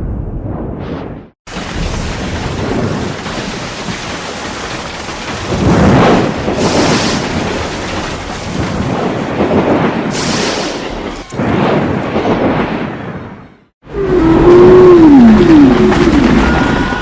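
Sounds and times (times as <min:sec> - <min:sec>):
thunder-like rumble: 0:00.0 - 0:17.0
rain-like hiss: 0:01.5 - 0:11.0.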